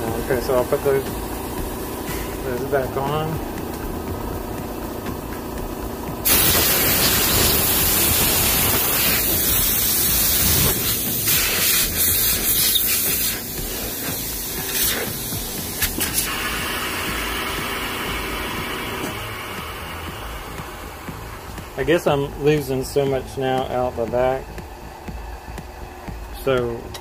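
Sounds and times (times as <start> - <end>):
compressed air hissing: 0.0 - 3.6, 6.2 - 21.8.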